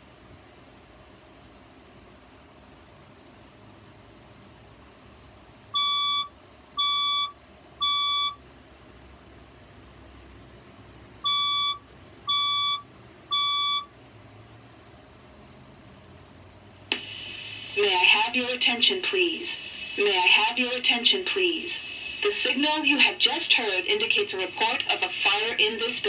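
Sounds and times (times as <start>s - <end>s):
fire alarm beeps: 5.8s - 8.4s, 11.2s - 13.9s.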